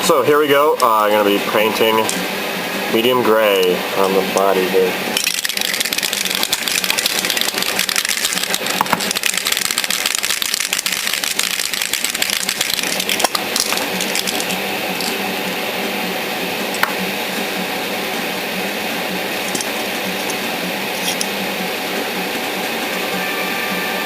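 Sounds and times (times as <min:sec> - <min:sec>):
spray can hissing: 0:05.2 - 0:15.2.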